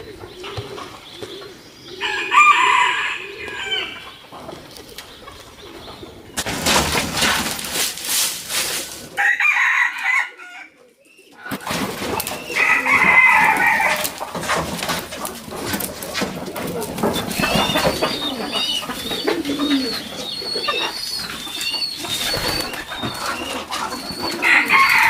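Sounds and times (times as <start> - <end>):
hens clucking: 0.0 - 25.0
rooster crowing: 2.0 - 4.0, 9.2 - 10.8, 12.5 - 14.1, 24.3 - 25.0
rustling noise: 6.4 - 9.2, 11.5 - 25.0.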